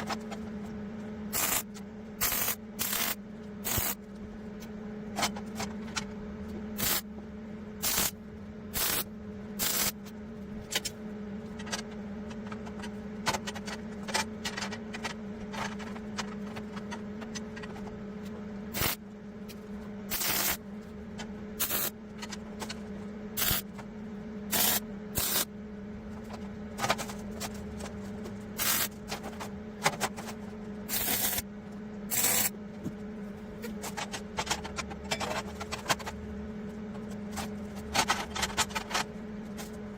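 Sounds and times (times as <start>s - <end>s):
welding machine hum: 0.0s - 39.9s
short bursts of welding arc: 1.3s - 1.6s, 2.2s - 4.0s, 6.8s - 7.0s, 7.8s - 8.1s, 8.8s - 10.0s, 18.8s - 19.0s, 20.1s - 20.6s, 21.6s - 21.9s, 23.4s - 23.6s, 24.5s - 25.5s, 28.6s - 28.9s, 30.9s - 31.4s, 32.1s - 32.5s.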